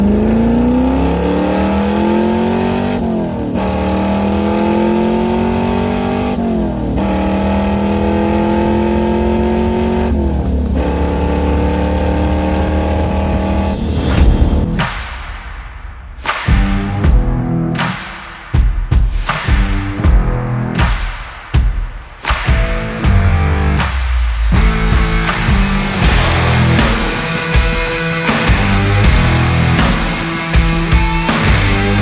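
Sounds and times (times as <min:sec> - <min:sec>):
car engine accelerating: 0:00.0 - 0:14.9, 0:23.0 - 0:32.0.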